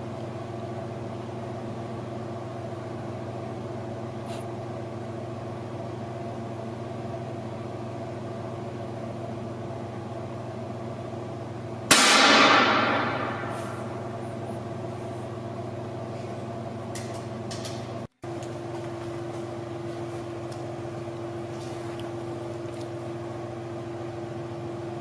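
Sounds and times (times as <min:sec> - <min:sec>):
low hum: 0:05.3 - 0:24.6
loud ringing bang: 0:11.9 - 0:14.0.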